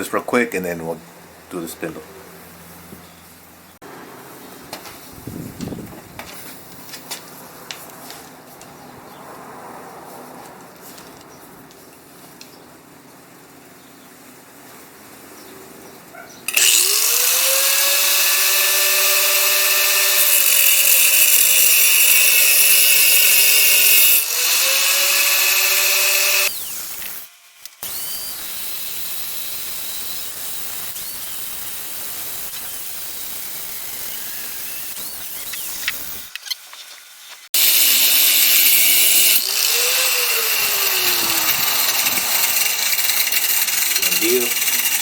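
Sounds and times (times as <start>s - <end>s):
power tool cutting steel: 16.5s - 36.6s, 37.5s - 45.0s.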